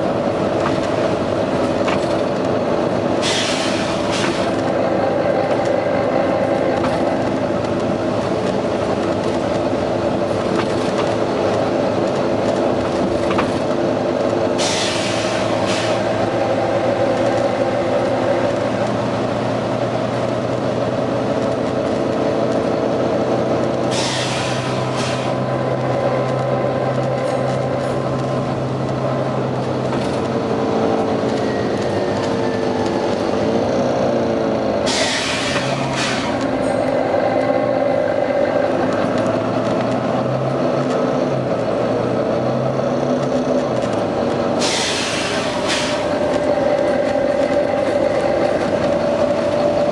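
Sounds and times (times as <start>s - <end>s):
diesel bus engine running: 0.0s - 49.9s
compressed air hisses: 14.6s - 16.0s, 34.9s - 36.4s, 44.6s - 46.0s.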